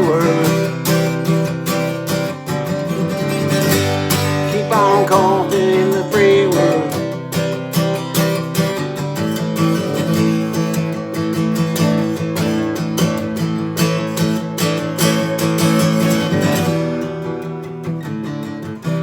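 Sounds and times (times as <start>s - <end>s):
acoustic guitar strumming chords: 0.0s - 19.0s.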